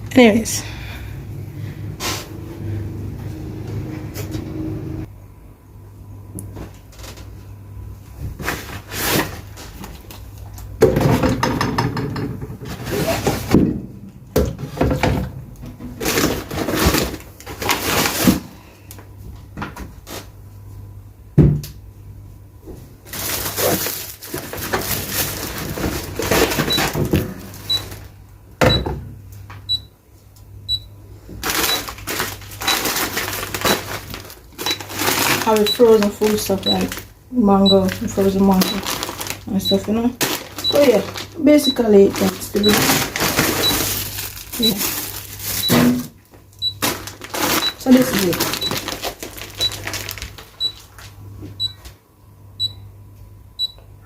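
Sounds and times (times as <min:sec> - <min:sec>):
plastic bags rustling: 0:15.9 - 0:18.6, 0:23.0 - 0:28.2, 0:31.3 - 0:51.2
items set down with thuds: 0:45.6 - 0:46.1.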